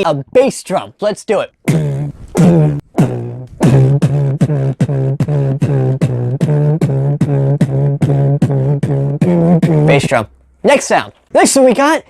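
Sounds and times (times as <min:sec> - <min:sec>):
man beatboxing bass drum kicks: 0:01.6 - 0:10.3.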